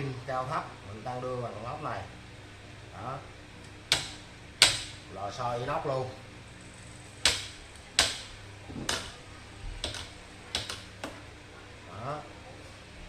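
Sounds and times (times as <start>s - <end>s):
mechanical clicks and knocks: 7.2s - 9.2s, 9.8s - 11.2s.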